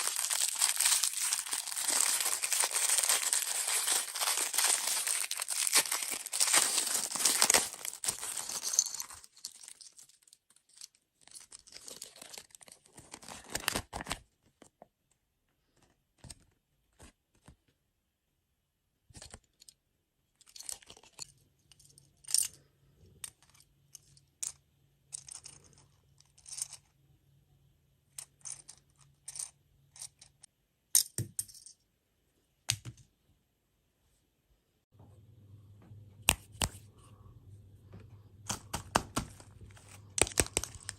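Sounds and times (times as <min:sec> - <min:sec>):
plastic packaging crinkling: 0:00.0 - 0:10.4, 0:39.1 - 0:40.9.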